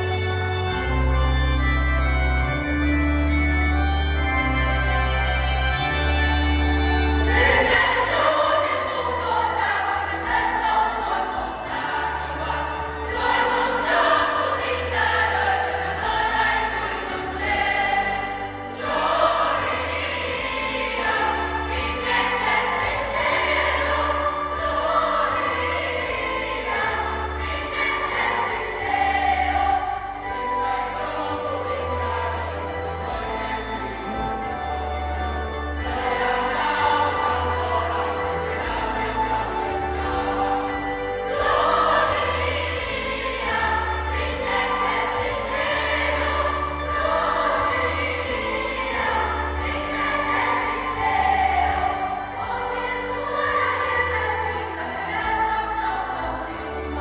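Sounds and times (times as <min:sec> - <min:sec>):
choir singing a hymn: 0:00.0 - 0:57.0
instrumental accompaniment with bass: 0:00.0 - 0:57.0.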